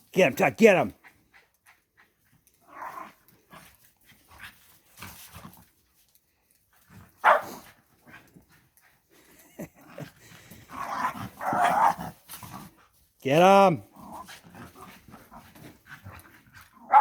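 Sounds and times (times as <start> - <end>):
dogs growling: 2.3 - 5.6, 6.8 - 12.9, 13.8 - 17.0
dogs barking: 7.2 - 7.6.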